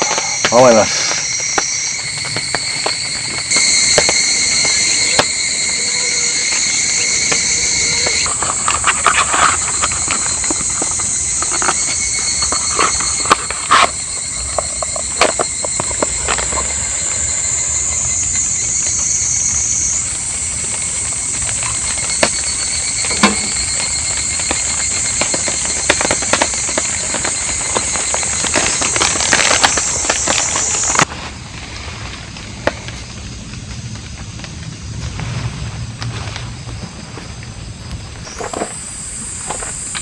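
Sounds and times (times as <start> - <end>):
faint steady tones: 0.0 - 31.1
high-pitched hiss: 0.0 - 33.9, 36.5 - 40.0.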